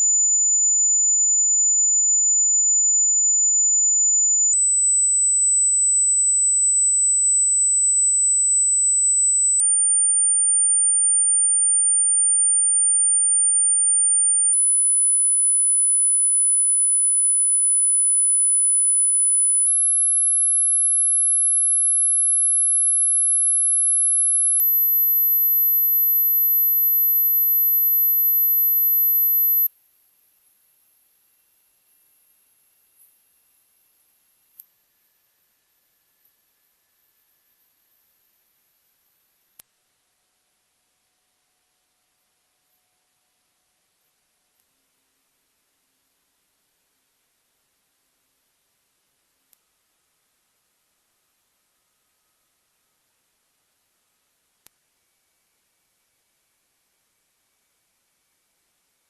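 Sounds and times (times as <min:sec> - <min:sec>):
high sine tone: 0:00.0 - 0:34.7.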